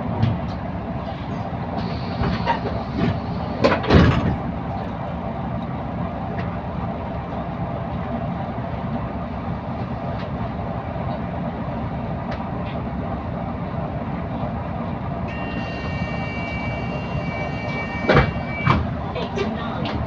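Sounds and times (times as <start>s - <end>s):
bus running and road noise: 0.0s - 20.0s
steady high-pitched tone: 15.3s - 18.8s.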